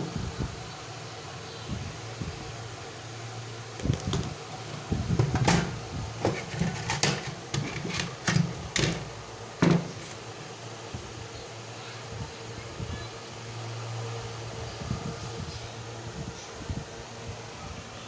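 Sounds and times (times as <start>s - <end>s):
fan humming: 0.0s - 18.0s
irregular clicks and knocks: 3.8s - 10.2s.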